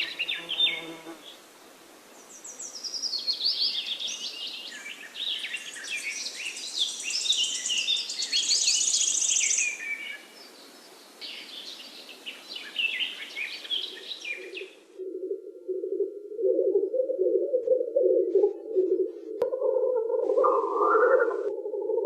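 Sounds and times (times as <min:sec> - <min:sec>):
songbirds singing: 0:00.0 - 0:01.4, 0:02.1 - 0:22.0
steady outdoor hiss: 0:00.0 - 0:22.0
low wavering hum: 0:15.0 - 0:22.0.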